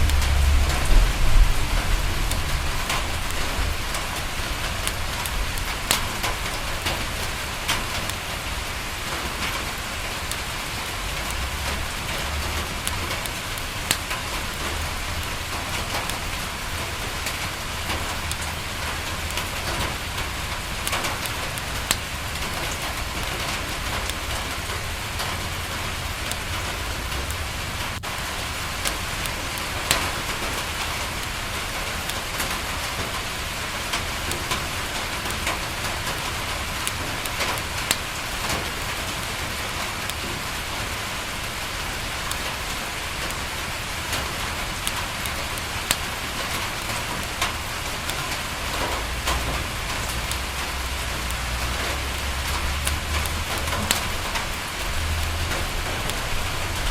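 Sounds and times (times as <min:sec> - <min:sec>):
low rumble: 0:00.0 - 0:05.8
rain on a window: 0:00.0 - 0:56.9
wood fire crackling: 0:00.0 - 0:56.9.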